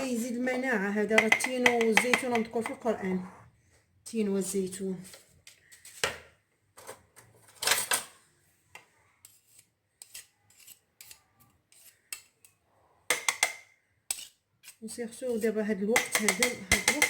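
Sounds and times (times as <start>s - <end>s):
metal spoon scraping a jar: 9.2s - 12.5s, 13.1s - 17.0s.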